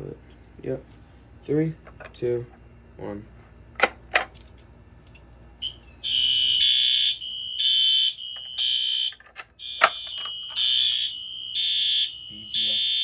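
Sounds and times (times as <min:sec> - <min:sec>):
fire alarm horn blasts: 0:05.6 - 0:13.0
steady high alarm tone: 0:05.6 - 0:13.0.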